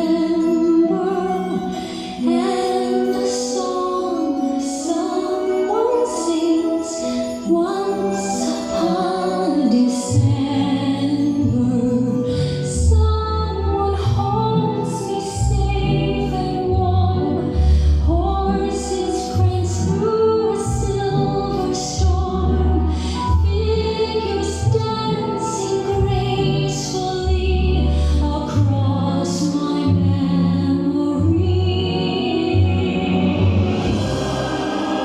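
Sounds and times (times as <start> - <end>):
slow song with woman singing: 0.0 - 35.0
sustained bass notes: 29.9 - 35.0.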